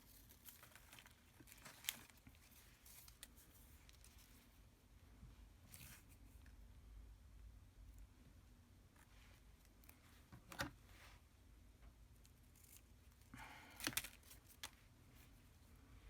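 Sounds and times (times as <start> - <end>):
craft paper rustling: 0.0 - 4.6.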